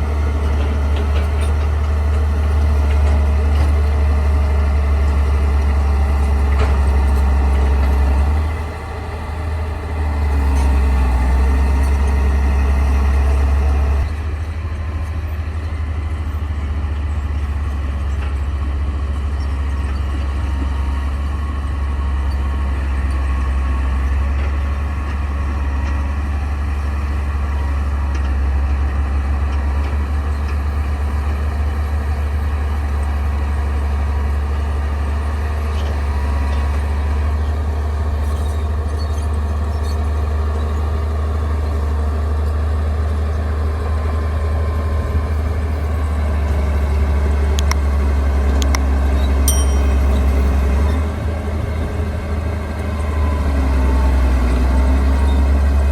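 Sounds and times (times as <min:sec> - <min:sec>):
diesel engine droning: 0:00.0 - 0:28.0.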